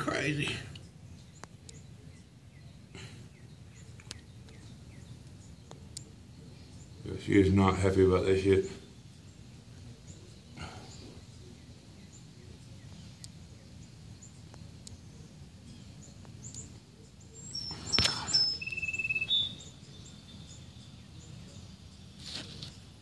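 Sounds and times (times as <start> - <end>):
birds chirping: 0.0 - 23.0
clear whistled notes: 17.6 - 19.6.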